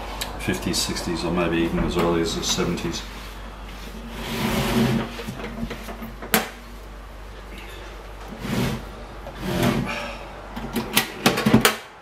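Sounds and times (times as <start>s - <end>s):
metal box scraping and shuffling: 3.8s - 6.0s.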